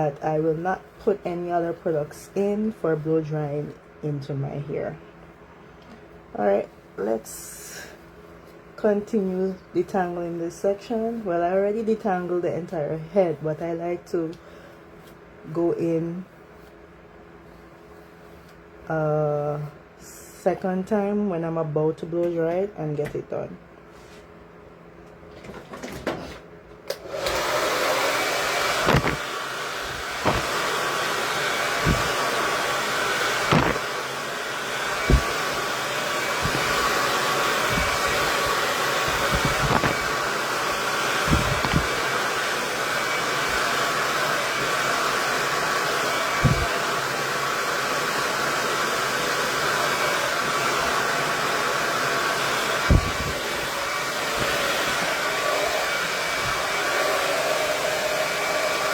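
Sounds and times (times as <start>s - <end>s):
hair dryer blowing: 26.9s - 58.9s.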